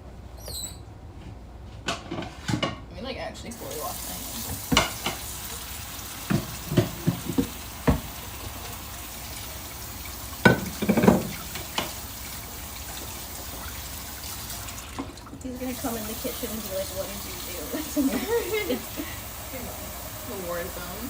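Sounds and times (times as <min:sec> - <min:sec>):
kitchen utensils knocking and clattering: 0:04.5 - 0:05.2, 0:06.2 - 0:08.1, 0:10.4 - 0:12.0.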